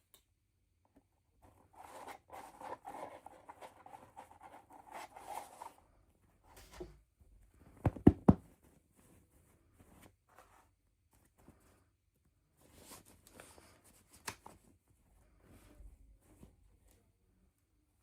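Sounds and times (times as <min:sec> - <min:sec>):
short scrape: 0:06.5 - 0:07.0.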